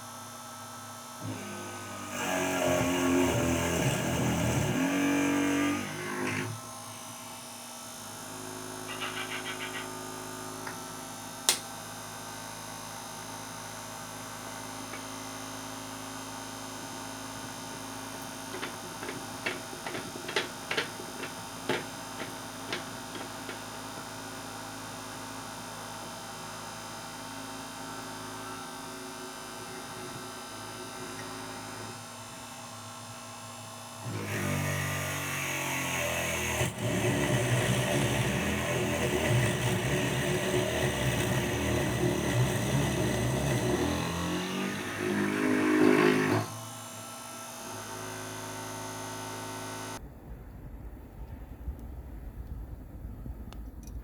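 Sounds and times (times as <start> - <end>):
small electric motor running: 0.0 - 24.5, 26.1 - 50.0
sharp click: 11.5 - 11.7.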